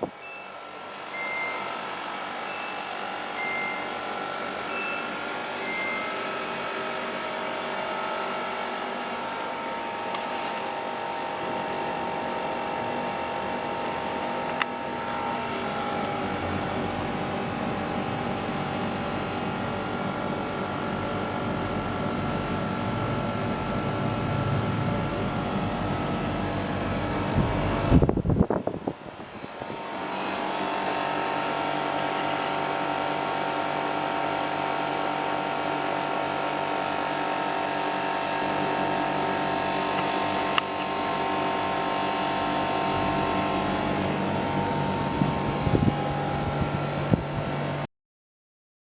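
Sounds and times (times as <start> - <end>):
air conditioner fan whirring: 0.0 - 47.9.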